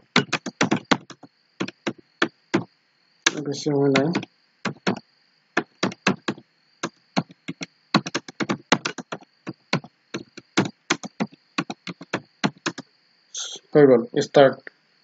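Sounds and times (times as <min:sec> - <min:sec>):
keyboard typing: 0:00.0 - 0:02.7, 0:03.3 - 0:05.0, 0:05.6 - 0:12.8
faint high whine: 0:00.0 - 0:15.0.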